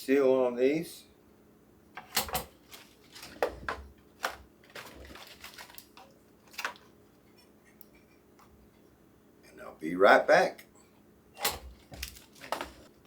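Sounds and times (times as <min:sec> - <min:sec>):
foil bags crinkling and clicking: 0:02.3 - 0:06.9, 0:11.5 - 0:12.9.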